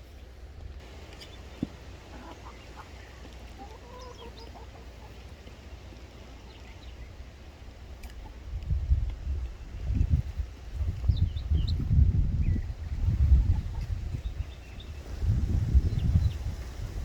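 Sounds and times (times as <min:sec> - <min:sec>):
chickens clucking: 0:00.8 - 0:16.8.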